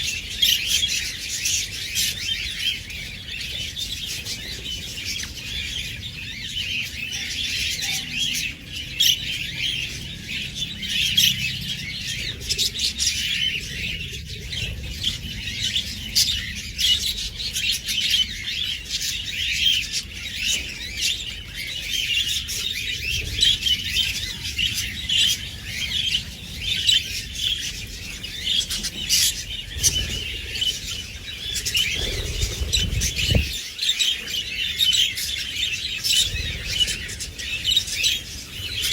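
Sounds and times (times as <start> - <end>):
budgies chirping and chattering: 0.0 - 38.9
low rumble: 31.6 - 33.6.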